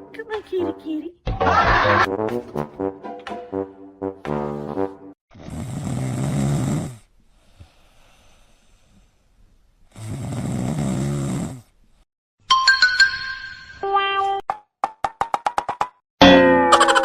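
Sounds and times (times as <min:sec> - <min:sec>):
person snoring: 0:04.4 - 0:09.1, 0:09.9 - 0:11.7.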